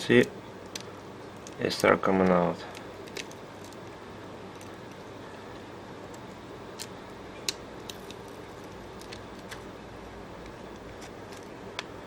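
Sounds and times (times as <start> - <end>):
glass clicking and crackling: 2.8 - 5.0, 6.1 - 9.6.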